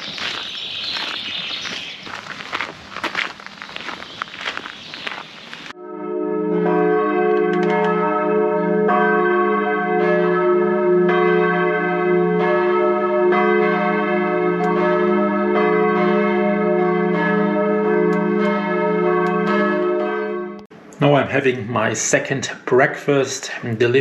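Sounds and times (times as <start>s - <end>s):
bells ringing: 5.8s - 20.6s.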